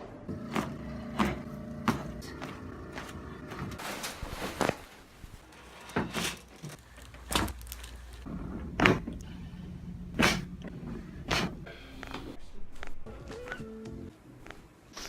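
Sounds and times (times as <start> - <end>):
spinal joints cracking: 6.0 - 9.3.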